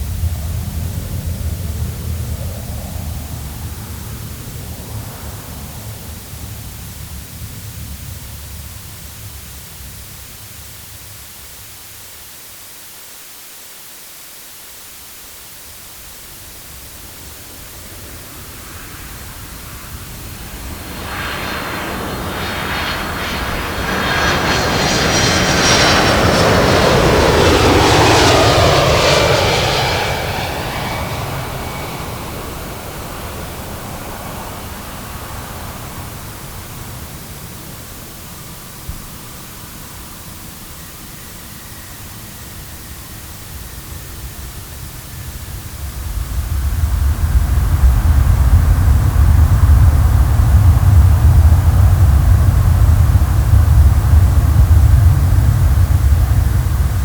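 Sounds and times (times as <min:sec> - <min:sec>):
airplane flying past: 0:00.0 - 0:09.0, 0:17.4 - 0:57.0
low rumble: 0:45.6 - 0:57.0.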